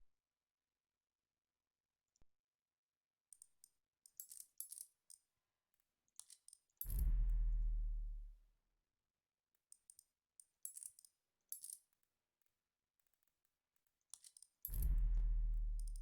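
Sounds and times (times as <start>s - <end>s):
light metallic clicks and rattles: 6.2s - 7.2s, 14.1s - 16.0s.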